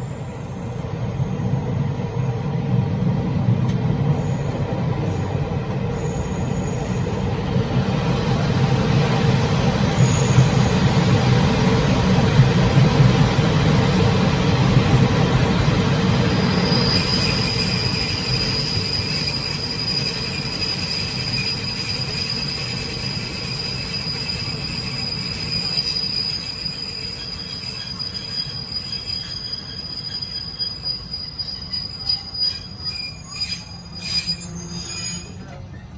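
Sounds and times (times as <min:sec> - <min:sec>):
train wheels rumbling on rail: 0:00.0 - 0:35.9
high-pitched brake squeal: 0:04.1 - 0:07.3, 0:09.8 - 0:11.0, 0:15.4 - 0:35.9
train clunks: 0:29.0 - 0:35.9.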